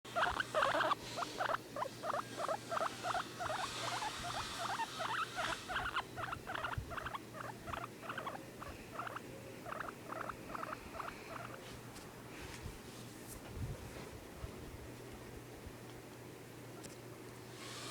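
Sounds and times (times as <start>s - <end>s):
guinea pig squeaking: 0.1s - 11.6s.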